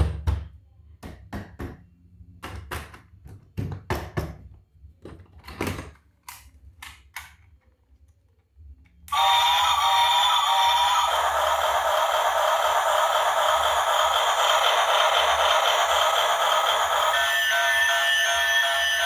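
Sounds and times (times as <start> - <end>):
clicks from handling toys and packaging: 5.1 - 7.7.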